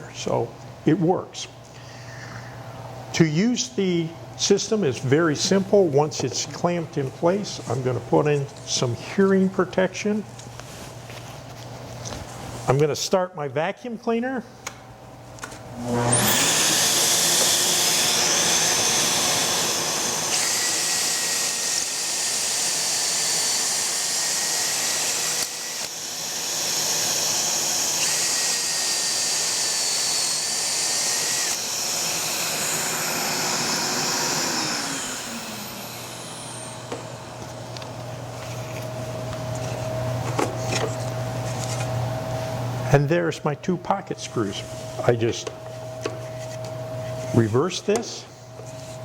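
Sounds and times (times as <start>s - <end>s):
shop vacuum running: 1.4s - 12.8s, 15.4s - 49.0s
drill boring holes: 15.8s - 37.5s.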